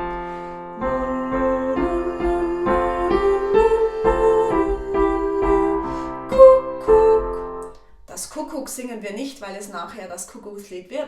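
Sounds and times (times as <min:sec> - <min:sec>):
piano melody: 0:00.0 - 0:08.0.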